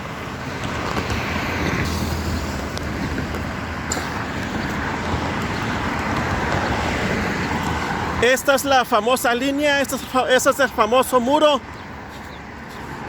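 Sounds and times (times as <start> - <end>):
low engine hum: 0.0 - 8.2
rush of passing vehicles: 0.0 - 13.0.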